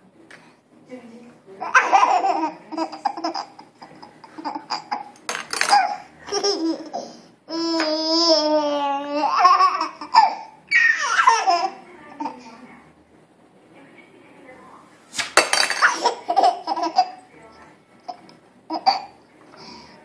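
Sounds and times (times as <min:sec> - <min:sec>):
baby laughing: 0:01.6 - 0:12.5, 0:15.8 - 0:17.2, 0:18.1 - 0:19.2
baby crying: 0:06.8 - 0:12.4.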